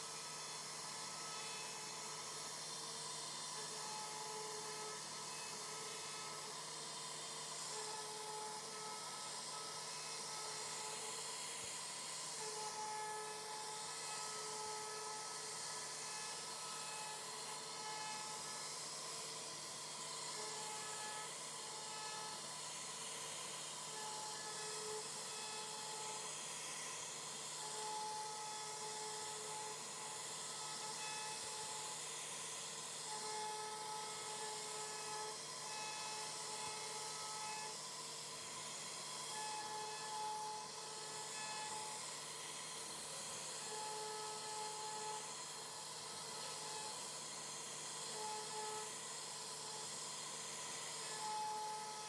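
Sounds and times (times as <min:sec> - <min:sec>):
machine whining tone: 0:00.0 - 0:52.0
router spindle hissing: 0:00.0 - 0:52.0.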